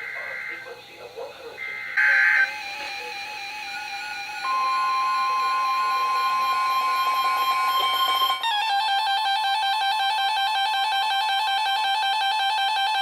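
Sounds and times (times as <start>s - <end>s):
steady weather alert tone: 0.0s - 7.7s
steady alarm beeps: 0.0s - 8.4s
two-pitch electronic warble: 1.6s - 9.9s.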